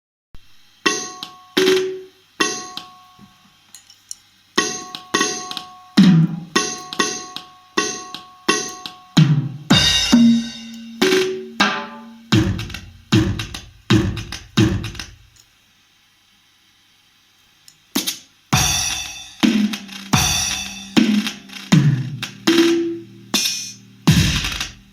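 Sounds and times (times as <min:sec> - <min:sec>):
electronic percussion hits: 0:04.6 - 0:15.2, 0:18.0 - 0:24.9.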